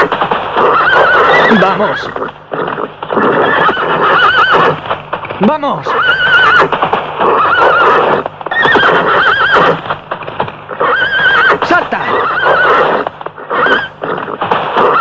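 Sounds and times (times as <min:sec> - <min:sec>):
horse whinnying: 0:00.0 - 0:05.0, 0:05.8 - 0:10.0, 0:10.7 - 0:15.0
horse hoofbeats galloping: 0:00.0 - 0:15.0.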